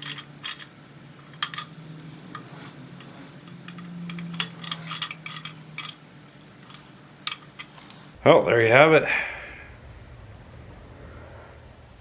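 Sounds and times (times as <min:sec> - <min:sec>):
metallic clinks of hand tools: 0:00.0 - 0:08.2
low steady hum: 0:00.0 - 0:08.5.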